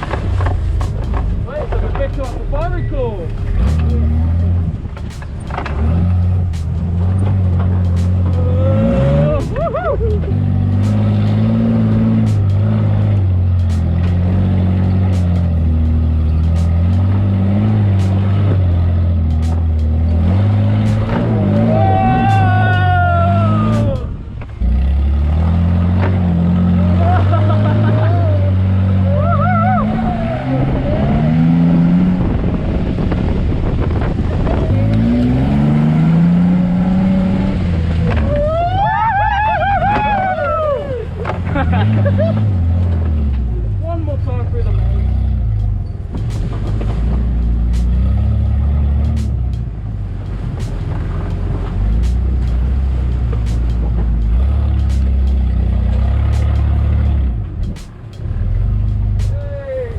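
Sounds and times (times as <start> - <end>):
sharp knocks: 0.0 - 8.4, 10.8 - 14.3, 14.9 - 22.9, 58.9 - 59.5
vehicle engine under load: 0.0 - 59.9.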